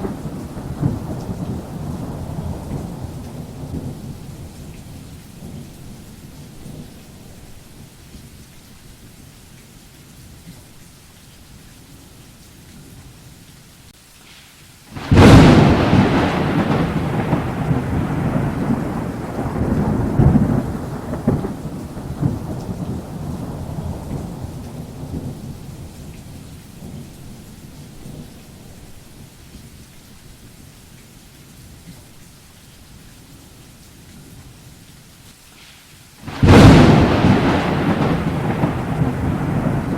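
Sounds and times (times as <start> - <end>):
thunder rumbling: 0.0 - 7.5, 15.0 - 29.1, 36.2 - 39.9
steady rain: 0.0 - 39.9
thunderclap crack: 15.0 - 25.6, 36.2 - 39.9.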